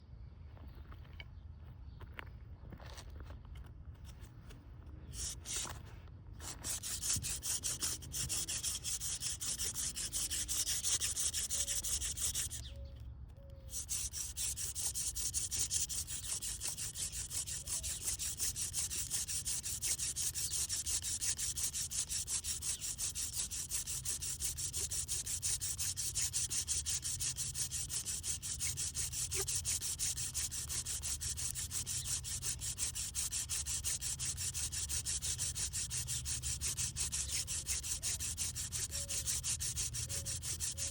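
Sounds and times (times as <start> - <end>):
wooden spindle rubbing in socket: 5.1 - 5.8, 6.4 - 12.8, 13.5 - 40.9.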